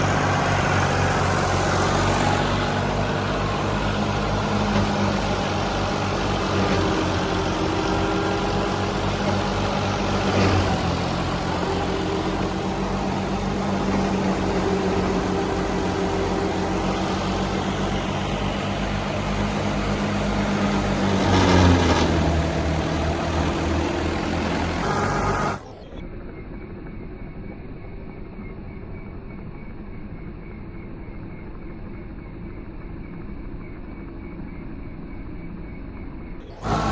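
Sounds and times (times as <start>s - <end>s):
combine harvester running: 0.0s - 26.0s, 36.5s - 36.9s.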